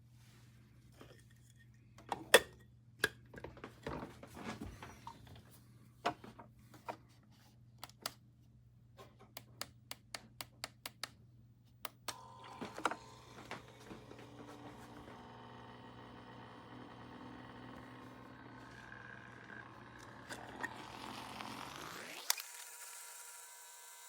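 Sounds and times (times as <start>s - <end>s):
coffee machine humming: 12.1s - 24.0s.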